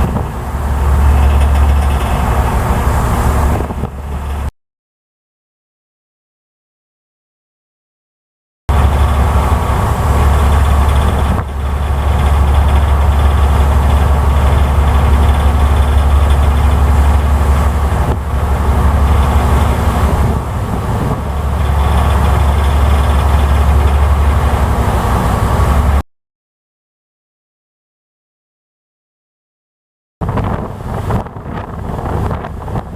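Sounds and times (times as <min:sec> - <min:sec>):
ferry engines droning: 0:00.0 - 0:04.5, 0:08.7 - 0:26.0.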